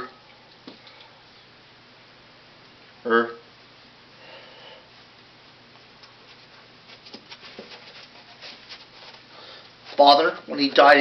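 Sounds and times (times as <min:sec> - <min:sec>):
background hiss: 0:00.0 - 0:11.0
light taps and rustles: 0:06.0 - 0:09.3.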